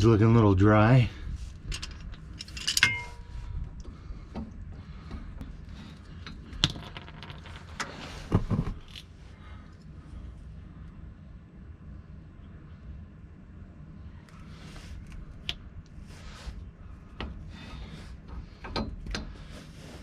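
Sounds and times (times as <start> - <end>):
metal tools clinking: 1.7 - 3.3.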